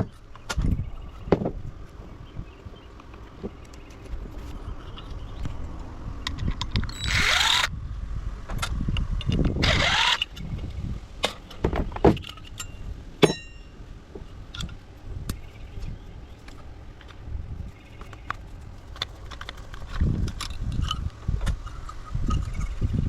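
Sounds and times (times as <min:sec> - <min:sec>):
small metal part ringing: 0:12.4 - 0:13.8
parts clattering: 0:16.4 - 0:22.5.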